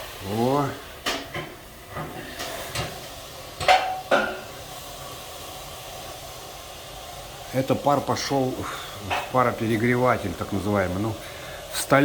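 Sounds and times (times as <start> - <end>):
steam hissing: 0.0 - 12.0.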